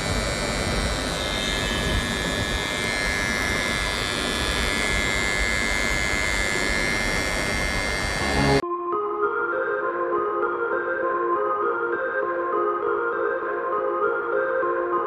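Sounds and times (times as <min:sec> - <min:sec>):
electrical contactor buzzing: 0:00.0 - 0:08.6.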